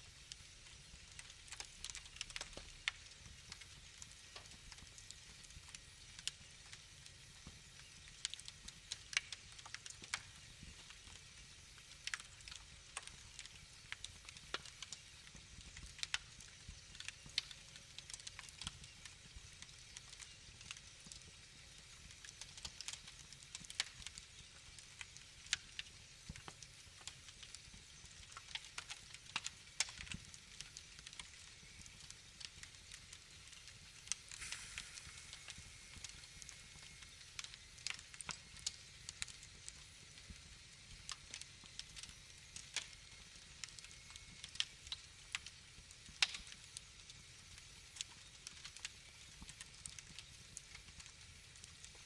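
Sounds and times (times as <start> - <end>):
low rumble of flames: 0.0 - 52.0
wood fire crackling: 0.0 - 52.0.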